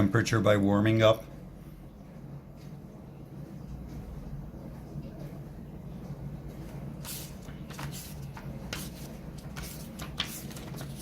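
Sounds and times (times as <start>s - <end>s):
steady low hum: 0.0s - 11.0s
rustling and scraping handling: 6.5s - 11.0s.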